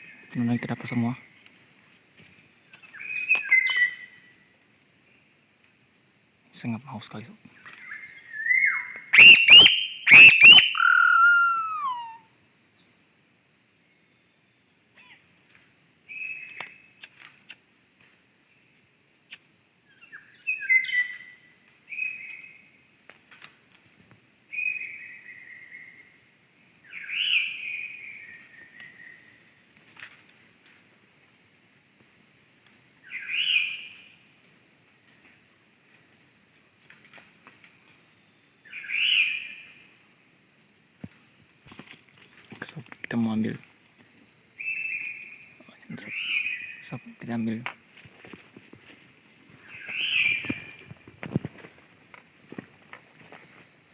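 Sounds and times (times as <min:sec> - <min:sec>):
bird whistling downward phrases: 0:08.3 - 0:12.3.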